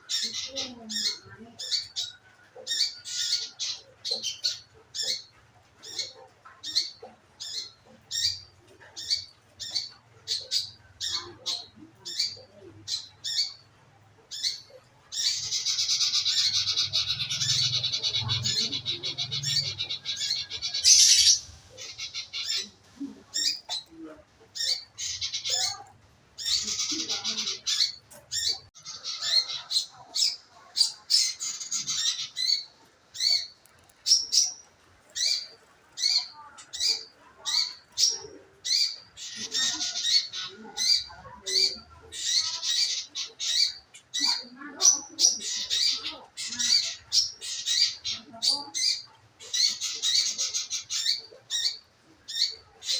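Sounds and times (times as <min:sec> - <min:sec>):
songbird chirping: 0:00.0 - 0:52.9
bird scratchy chattering: 0:14.4 - 0:23.9, 0:35.2 - 0:52.9.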